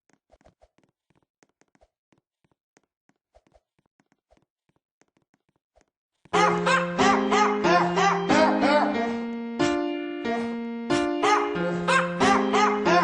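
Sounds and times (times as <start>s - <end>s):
piano keyboard music: 6.4s - 13.0s.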